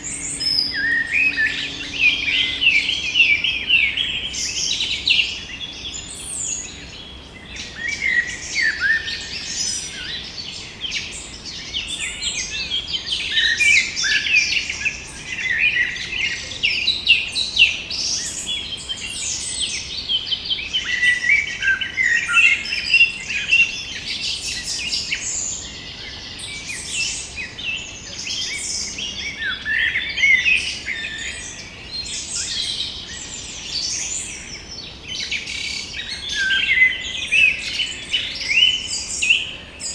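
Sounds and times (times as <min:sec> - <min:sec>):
birds chirping and singing: 0:00.0 - 0:07.1, 0:20.3 - 0:39.9.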